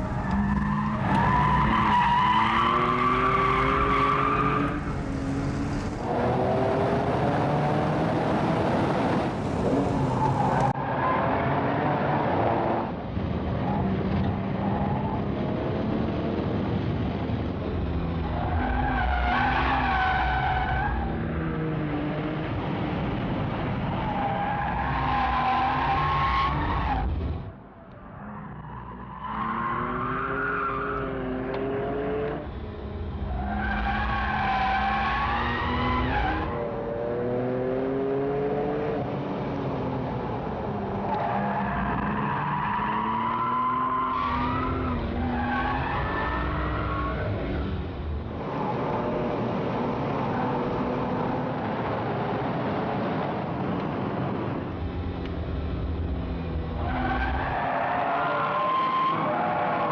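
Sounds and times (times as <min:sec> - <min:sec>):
car engine accelerating hard: 0:00.0 - 0:13.0, 0:29.2 - 0:59.9.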